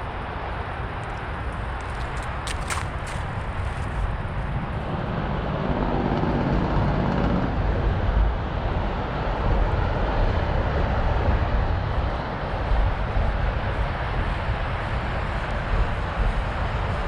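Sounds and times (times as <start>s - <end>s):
traffic noise: 0.0s - 17.0s
vehicle engine passing by: 4.7s - 11.2s.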